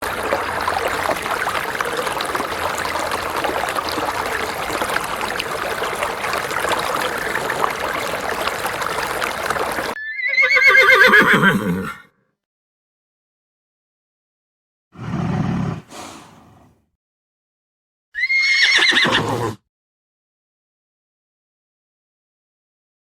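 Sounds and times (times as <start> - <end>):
running water: 0.0 - 10.0
horse whinnying: 10.0 - 12.1, 18.2 - 19.6.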